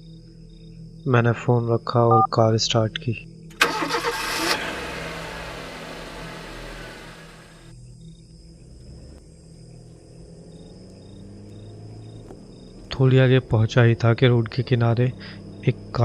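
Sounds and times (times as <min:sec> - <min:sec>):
crickets chirping: 0:00.0 - 0:04.5, 0:07.7 - 0:16.0
car engine revving and humming: 0:03.5 - 0:07.8, 0:08.4 - 0:16.0.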